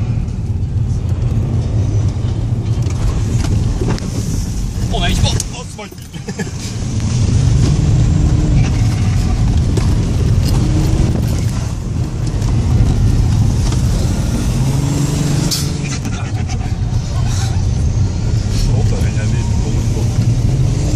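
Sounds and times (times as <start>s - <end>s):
diesel engine revving under load: 6.7s - 20.9s.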